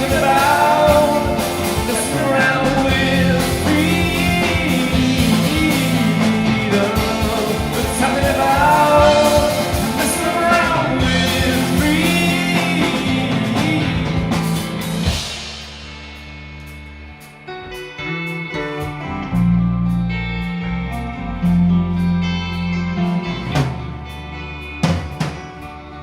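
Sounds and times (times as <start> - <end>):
person singing: 0.0 - 14.7
rock band playing: 0.0 - 26.0.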